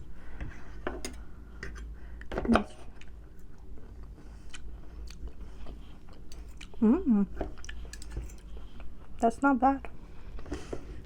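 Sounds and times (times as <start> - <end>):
chewing mouth noises: 4.4 - 6.8
person humming: 6.8 - 7.3.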